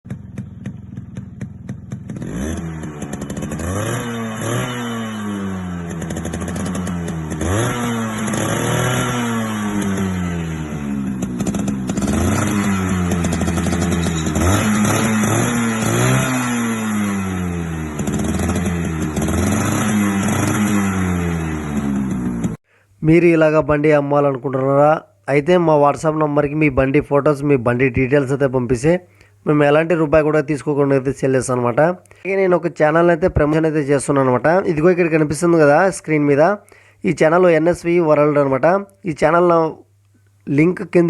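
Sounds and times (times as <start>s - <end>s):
motorcycle engine revving: 0.0s - 22.6s.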